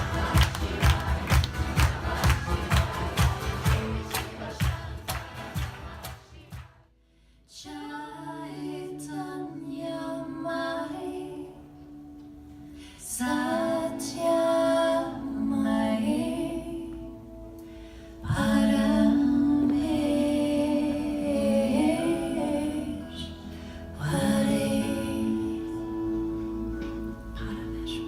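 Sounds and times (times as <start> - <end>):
woman singing slow chant: 13.1 - 17.2, 18.2 - 26.2.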